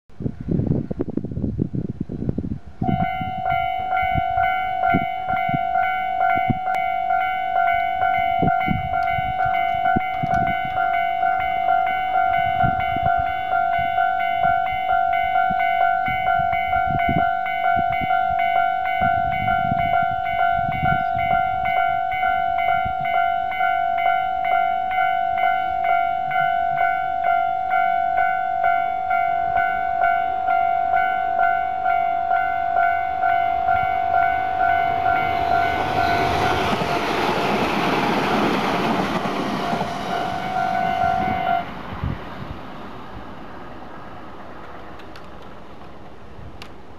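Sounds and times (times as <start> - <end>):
wind buffeting microphone: 0.1 - 27.0, 30.9 - 46.8
level crossing warning bell: 2.8 - 42.0.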